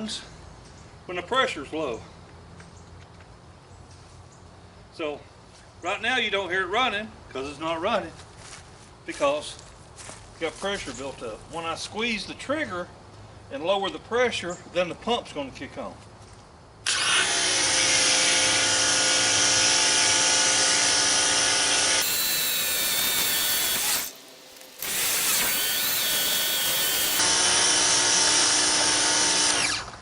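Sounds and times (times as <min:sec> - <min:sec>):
water spray hissing: 0:22.0 - 0:27.2
pressure washer motor whining: 0:22.0 - 0:27.5.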